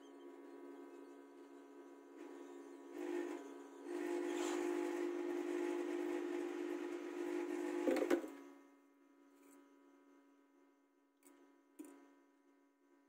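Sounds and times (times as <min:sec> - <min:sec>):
hot-air station whine and hiss: 0:00.0 - 0:08.5
faint hum: 0:00.0 - 0:13.0.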